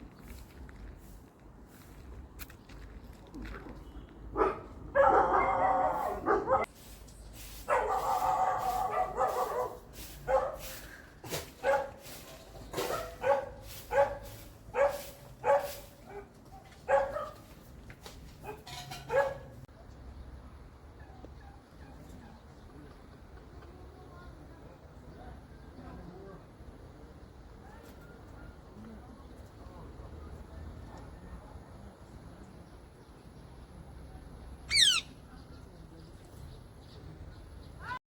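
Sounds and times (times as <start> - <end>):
dog barking: 4.3 - 6.7, 7.7 - 10.8, 11.6 - 12.0, 12.8 - 17.4, 18.4 - 19.6
dog drawn-out calls: 34.7 - 35.1.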